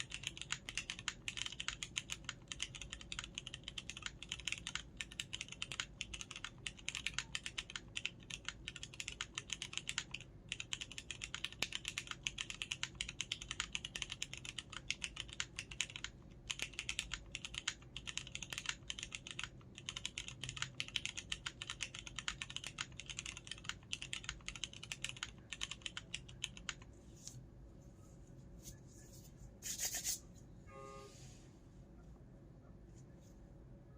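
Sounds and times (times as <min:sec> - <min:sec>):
typing on mechanical keyboard: 0:00.0 - 0:26.9.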